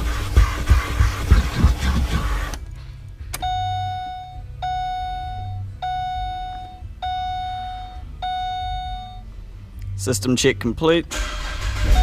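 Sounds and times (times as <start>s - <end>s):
dashboard warning chime: 3.4s - 9.3s.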